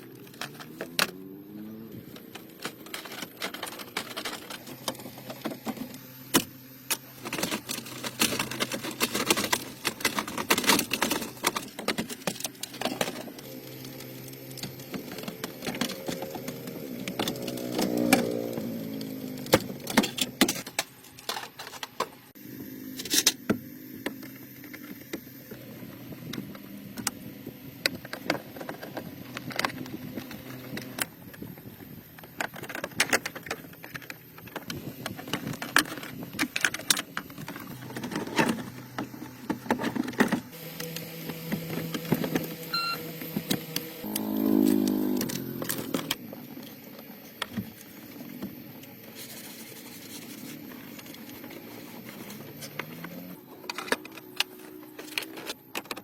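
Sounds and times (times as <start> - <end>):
motor whirring: 40.6 - 46.2.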